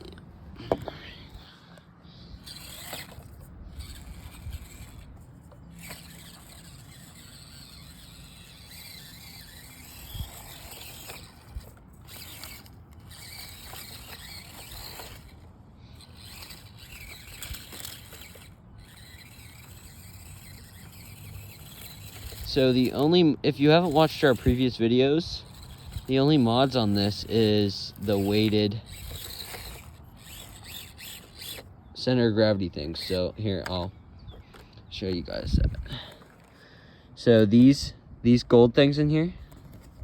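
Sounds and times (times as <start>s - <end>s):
small electric motor whirring: 0.0s - 38.5s, 39.4s - 40.0s
wind rumbling on microphone: 35.1s - 36.1s.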